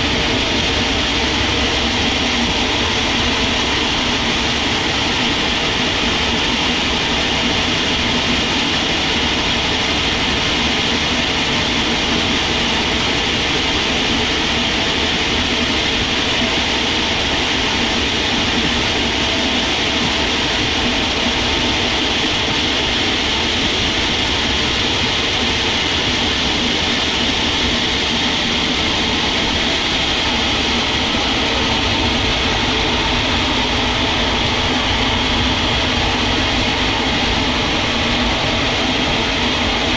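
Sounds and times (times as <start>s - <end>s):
sawmill machinery whirring: 0.0s - 39.9s.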